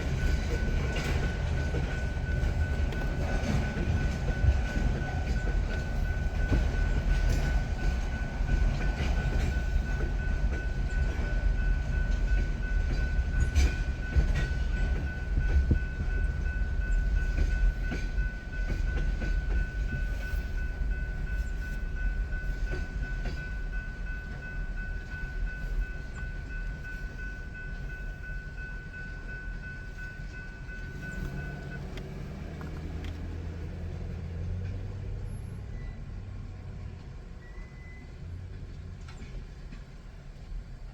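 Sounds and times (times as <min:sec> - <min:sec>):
wheels clicking over rails: 0:00.0 - 0:26.9
low engine hum: 0:00.0 - 0:37.4
freight train rumble: 0:00.0 - 0:40.9.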